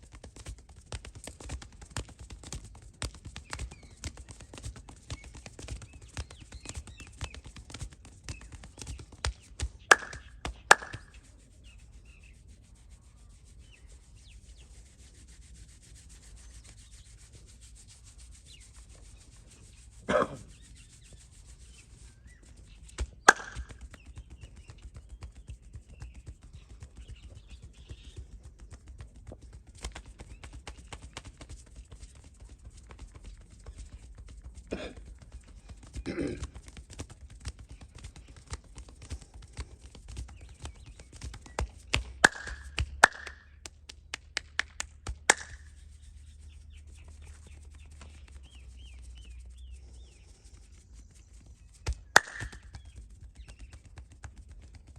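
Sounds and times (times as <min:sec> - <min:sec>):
quick tapping: 0:00.0 - 0:11.2, 0:22.8 - 0:45.8, 0:51.7 - 0:54.9
hands rubbing skin and clothing: 0:00.2 - 0:54.9.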